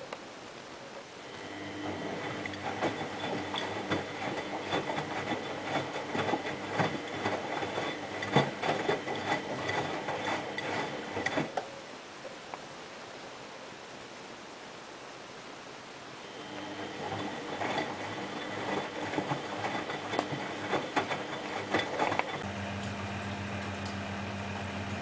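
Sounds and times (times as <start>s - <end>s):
washing machine motor humming: 1.3s - 11.5s, 16.3s - 25.0s.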